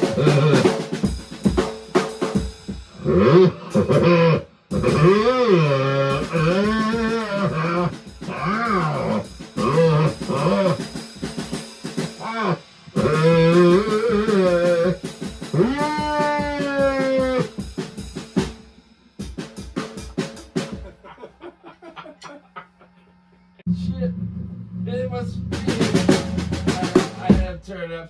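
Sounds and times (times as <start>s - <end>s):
drum kit beat: 0.0s - 21.6s, 24.8s - 27.9s
amplified sliding lead line: 23.7s - 27.3s.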